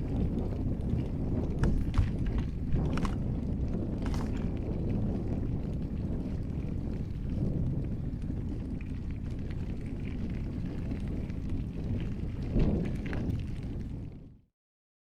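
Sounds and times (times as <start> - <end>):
wind buffeting microphone: 0.0 - 14.5
small clicks and rattles: 0.9 - 4.8.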